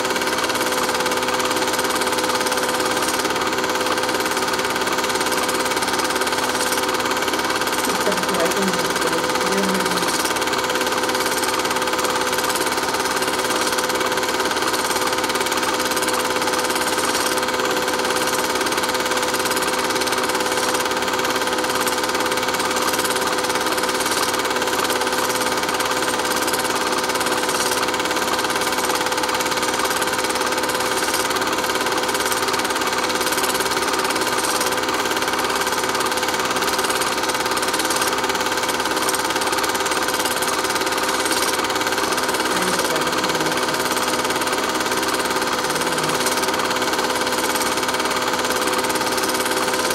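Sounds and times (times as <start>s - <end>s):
steady mechanical whirring hum: 0.0s - 35.2s, 38.8s - 49.9s.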